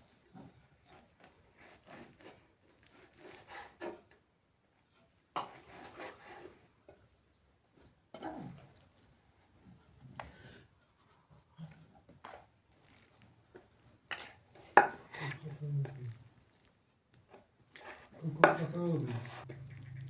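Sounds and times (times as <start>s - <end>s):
rubbing and scraping: 17.8s - 20.0s.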